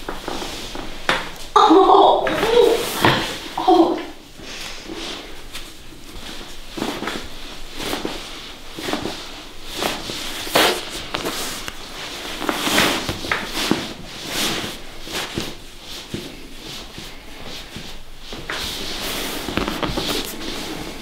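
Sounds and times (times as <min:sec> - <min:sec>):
hands rustling on clothing: 0:04.3 - 0:21.0.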